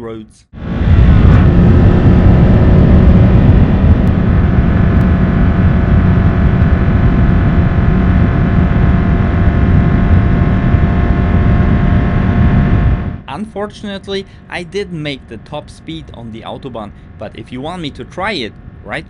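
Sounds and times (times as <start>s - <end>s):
road and wind noise: 0.6s - 13.3s, 18.5s - 18.9s
car engine droning: 0.6s - 19.0s.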